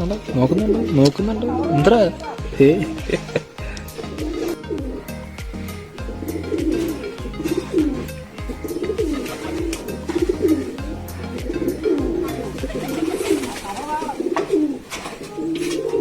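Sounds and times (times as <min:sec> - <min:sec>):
background music with beat: 0:00.0 - 0:13.5
pigeons cooing: 0:00.0 - 0:16.0.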